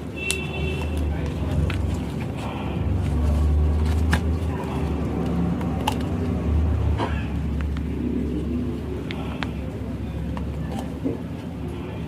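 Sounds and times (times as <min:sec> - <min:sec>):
plastic parts clicking: 0:03.8 - 0:06.3.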